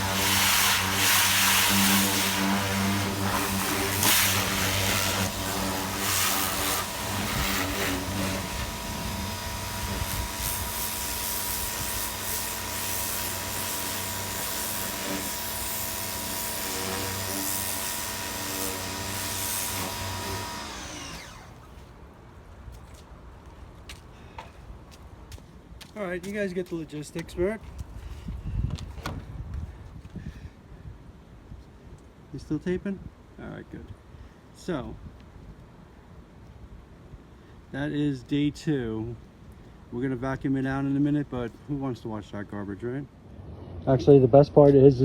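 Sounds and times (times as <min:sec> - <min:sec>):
water spray hissing: 0:00.0 - 0:16.2
pressure washer motor humming: 0:00.0 - 0:21.7.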